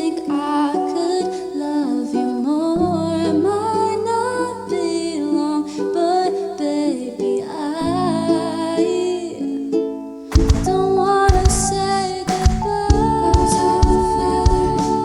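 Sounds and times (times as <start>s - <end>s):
person singing: 0.0s - 15.0s
instrumental accompaniment: 9.7s - 15.0s.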